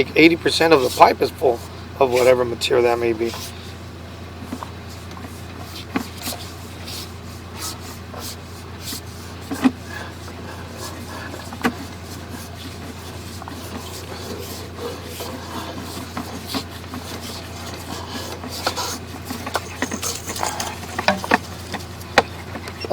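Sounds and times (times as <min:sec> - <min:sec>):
steady low hum: 0:00.0 - 0:22.9
camera scraping in pipe: 0:04.8 - 0:22.9.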